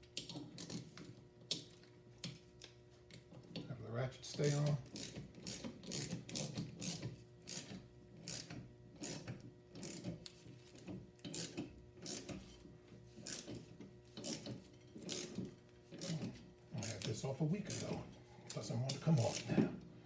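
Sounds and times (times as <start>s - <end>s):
ratchet wrench clicking: 4.6s - 10.1s, 11.3s - 12.4s, 13.3s - 13.6s, 14.2s - 17.1s, 17.7s - 18.0s.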